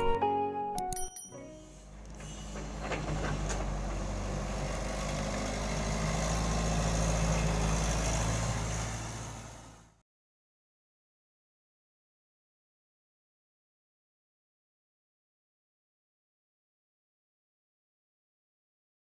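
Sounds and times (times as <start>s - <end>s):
diesel engine running: 1.5s - 10.0s.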